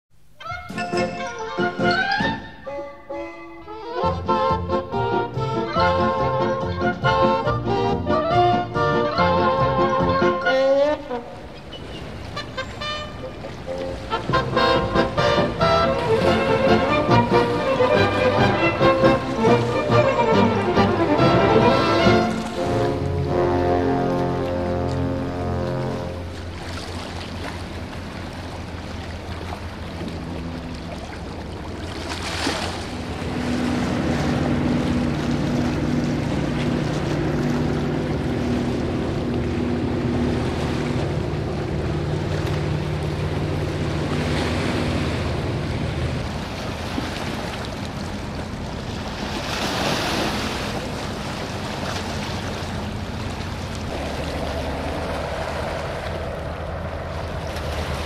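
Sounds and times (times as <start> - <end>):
boat engine humming: 0.1 - 58.0
water washing: 3.7 - 58.0.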